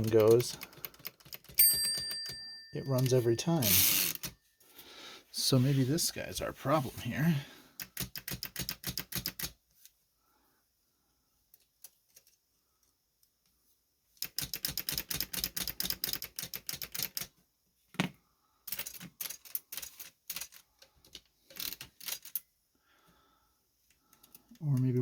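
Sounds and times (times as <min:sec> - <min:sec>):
typewriter keystrokes clattering: 0:00.0 - 0:02.4, 0:14.2 - 0:17.2.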